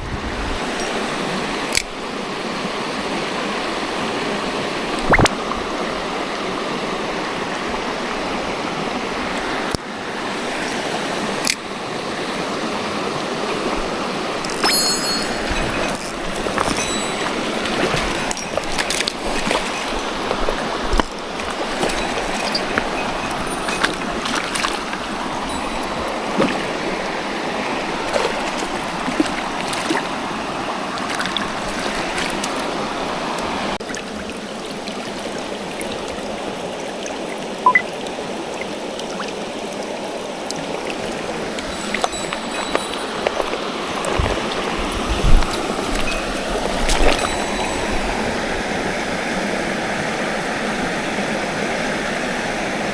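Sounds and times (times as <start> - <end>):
stream rushing over rocks: 0.0 - 52.9
small clicks and splashes: 11.4 - 11.6, 14.4 - 26.8, 27.8 - 30.2, 31.0 - 32.8, 38.5 - 48.0.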